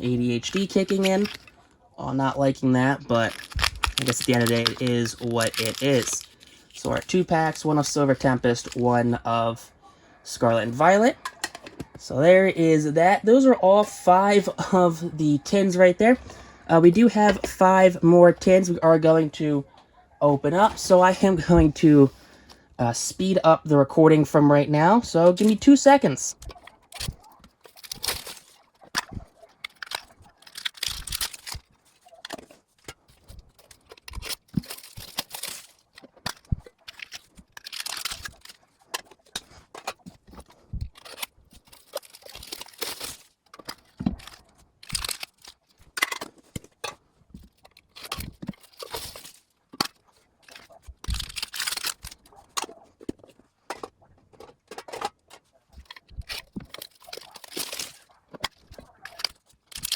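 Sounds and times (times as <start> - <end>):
plastic and foil packs crinkling: 0.0 - 9.6, 24.5 - 59.9.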